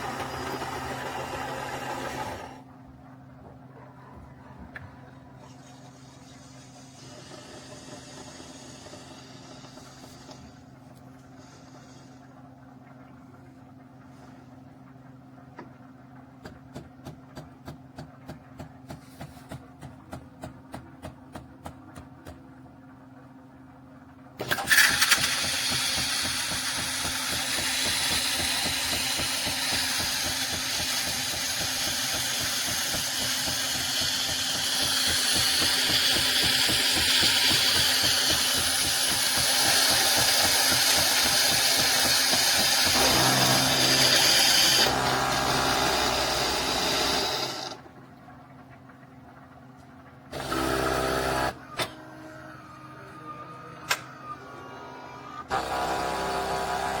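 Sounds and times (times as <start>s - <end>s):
espresso machine hum: 0.0s - 2.8s, 5.2s - 12.2s, 24.4s - 47.9s.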